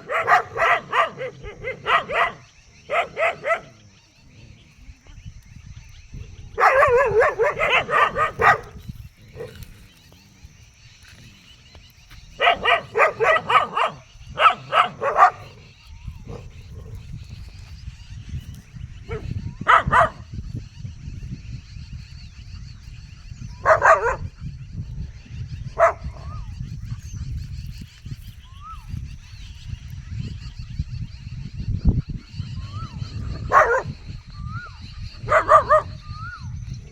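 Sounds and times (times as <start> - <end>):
dog barking: 0.0 - 3.8, 6.6 - 9.6, 12.4 - 15.7, 19.0 - 20.3, 23.6 - 24.4, 25.7 - 26.4, 32.9 - 34.0, 35.2 - 36.5.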